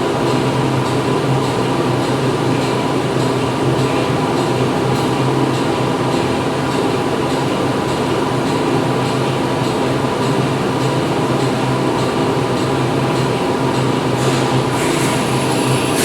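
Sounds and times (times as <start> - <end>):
factory machinery humming: 12.4 - 16.0.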